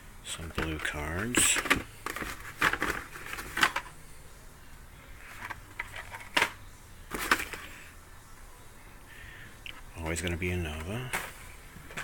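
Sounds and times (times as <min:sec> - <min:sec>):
plastic packages clicking and crinkling: 0:00.4 - 0:04.0, 0:05.4 - 0:07.7.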